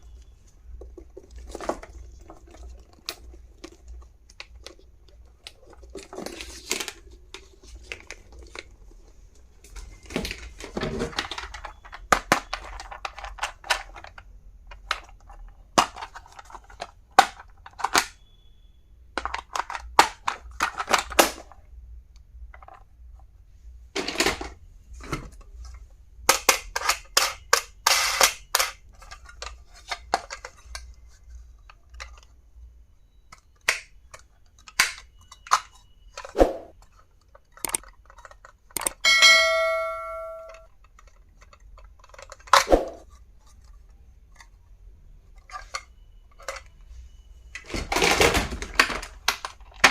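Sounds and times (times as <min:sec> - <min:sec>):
packaging crinkling and rustling: 0:00.0 - 0:14.2, 0:47.6 - 0:49.9
plastic clicks and snaps: 0:37.3 - 0:39.0.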